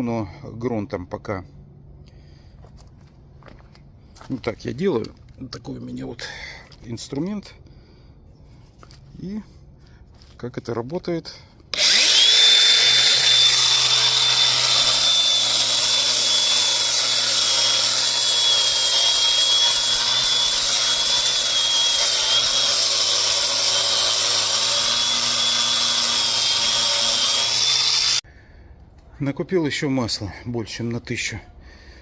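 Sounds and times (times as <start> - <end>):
power tool whining: 11.7 - 28.2.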